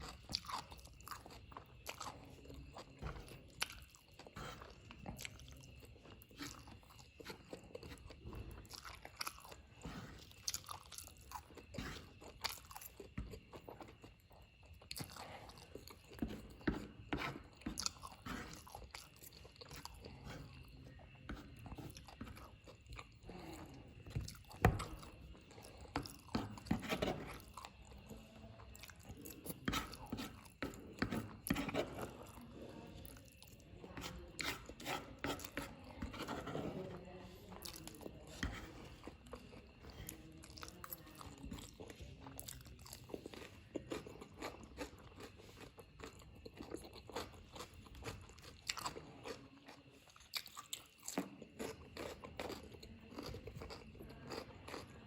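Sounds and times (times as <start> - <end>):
wet chewing and slurping: 0.0 - 55.0.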